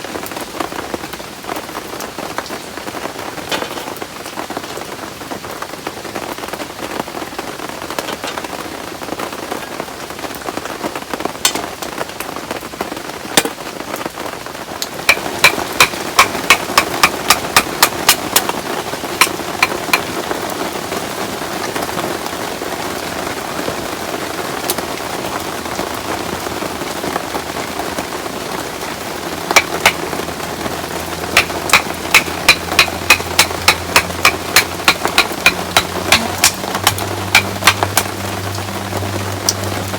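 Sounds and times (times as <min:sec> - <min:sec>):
heavy rain: 0:00.0 - 0:39.9
metallic hammer strikes: 0:15.1 - 0:18.2, 0:29.5 - 0:30.0, 0:31.4 - 0:38.1.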